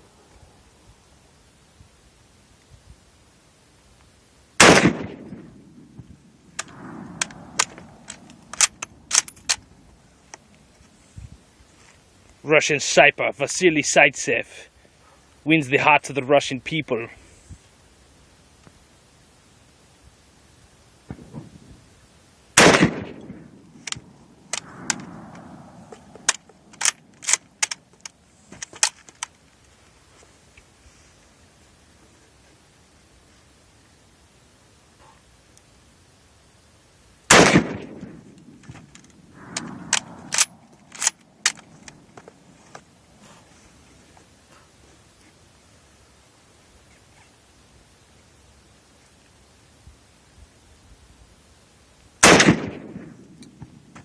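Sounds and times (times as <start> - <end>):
rifle shot: 4.6 - 5.8, 6.6 - 9.6, 21.1 - 21.6, 22.6 - 27.8, 37.3 - 38.6, 39.4 - 41.6, 52.2 - 53.4.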